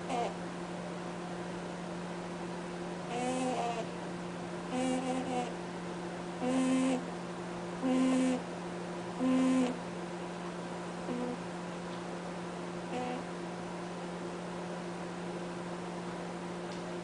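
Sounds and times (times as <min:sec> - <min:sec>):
rabbit snoring: 0:00.0 - 0:00.4, 0:03.1 - 0:03.9, 0:04.7 - 0:05.6, 0:06.4 - 0:07.1, 0:07.8 - 0:08.5, 0:09.2 - 0:09.8, 0:11.0 - 0:11.4, 0:12.9 - 0:13.3.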